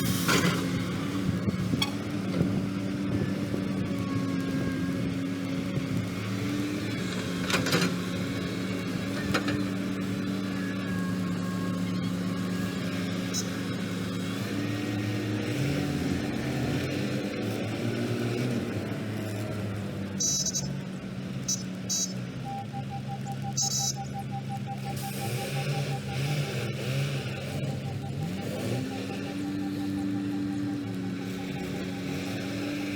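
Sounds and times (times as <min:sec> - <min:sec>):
heavy diesel engines working: 0:00.0 - 0:32.9
rapid beeping tone: 0:13.3 - 0:13.6, 0:20.2 - 0:20.7, 0:21.5 - 0:32.9.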